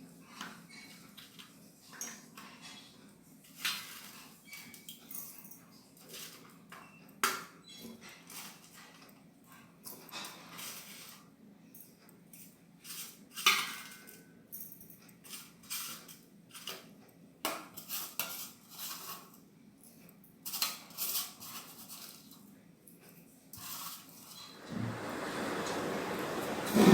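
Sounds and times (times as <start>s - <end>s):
dishes and utensils clinking: 9.8s - 11.1s, 25.5s - 26.9s.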